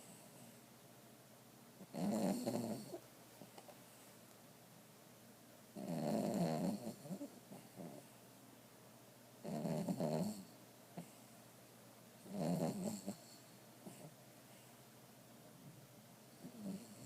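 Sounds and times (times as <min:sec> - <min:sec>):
dog snoring: 0:01.8 - 0:03.0, 0:05.8 - 0:08.1, 0:09.4 - 0:11.2, 0:12.2 - 0:14.2, 0:16.4 - 0:17.0.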